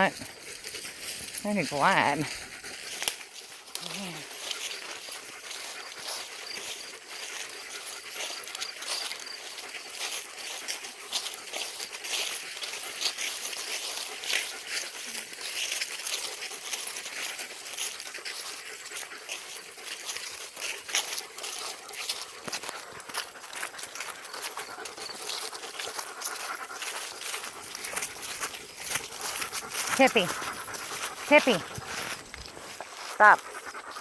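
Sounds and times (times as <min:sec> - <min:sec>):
footsteps on woodland trail: 0:00.0 - 0:34.0.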